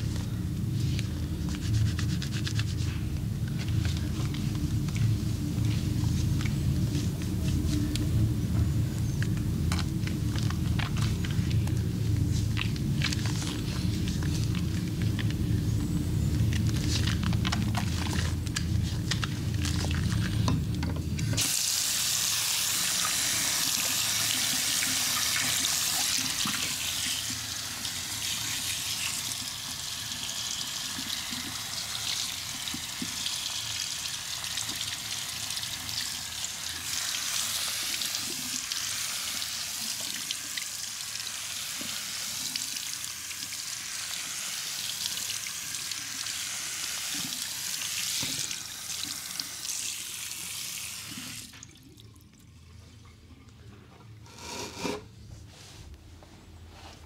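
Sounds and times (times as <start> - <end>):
low hum with clicks: 0.0 - 21.4
water running and splashing: 21.4 - 52.3.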